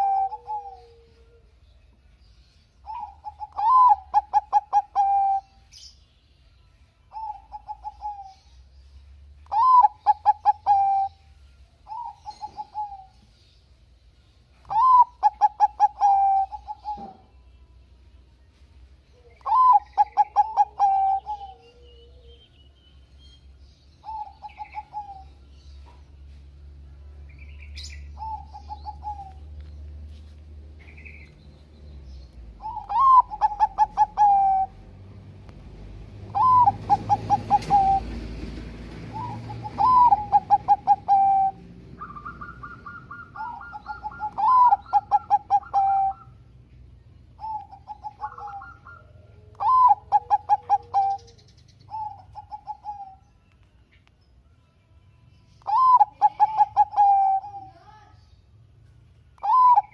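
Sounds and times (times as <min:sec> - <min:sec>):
dove cooing: 0:00.0 - 0:01.6, 0:02.8 - 0:05.6, 0:07.1 - 0:08.5, 0:09.5 - 0:11.2, 0:11.9 - 0:13.2, 0:14.6 - 0:17.4, 0:19.2 - 0:22.4, 0:24.0 - 0:26.0, 0:27.8 - 0:29.5, 0:32.6 - 0:34.8, 0:36.3 - 0:46.4, 0:47.4 - 0:53.2, 0:55.7 - 0:57.8, 0:59.4 - 0:59.9
bird chirps: 0:00.0 - 0:34.9, 0:36.3 - 0:38.3, 0:39.1 - 0:59.9.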